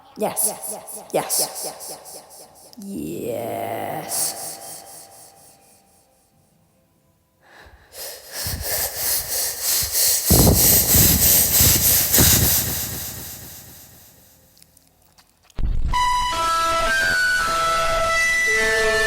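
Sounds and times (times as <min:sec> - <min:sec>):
person blowing into microphone: 0:07.9 - 0:14.1.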